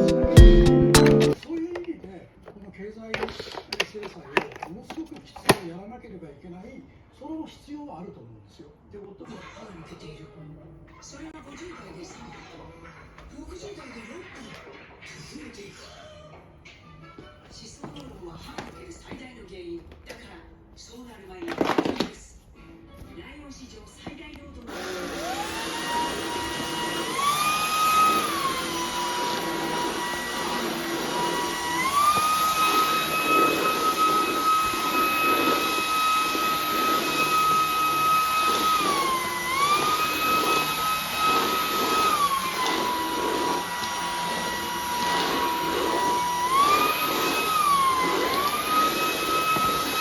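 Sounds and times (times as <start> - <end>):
vacuum cleaner motor whining: 0.0 - 5.7, 21.4 - 22.2, 24.3 - 50.0.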